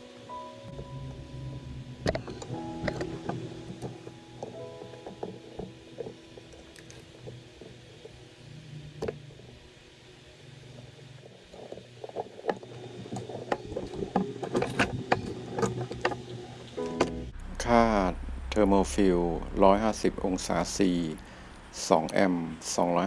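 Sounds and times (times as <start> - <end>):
low steady hum: 0.0 - 23.0
small tools clicking and scraping: 10.6 - 17.2.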